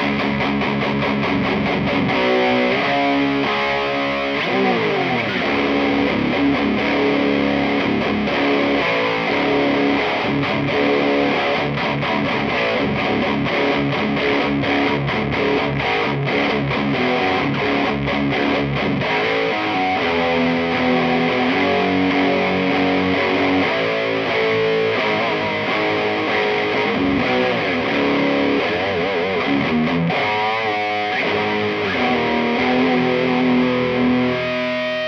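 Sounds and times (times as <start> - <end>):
distorted electric guitar riffing: 0.0 - 35.0.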